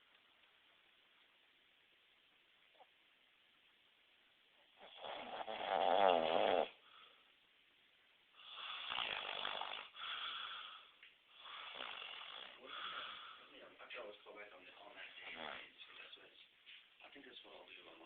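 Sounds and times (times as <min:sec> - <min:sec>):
man snoring loudly: 0:04.8 - 0:06.8, 0:08.5 - 0:10.0, 0:11.4 - 0:12.8.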